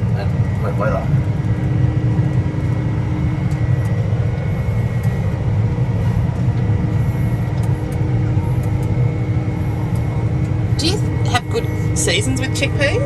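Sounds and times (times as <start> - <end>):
combine harvester engine drone: 0.0 - 13.0
faint machinery whine: 0.0 - 13.0.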